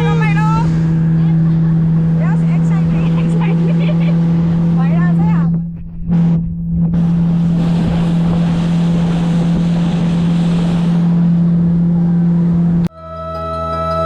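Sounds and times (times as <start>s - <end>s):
water rushing: 0.0s - 12.9s
motorboat engine running: 0.0s - 14.0s
wind on microphone: 4.3s - 12.9s.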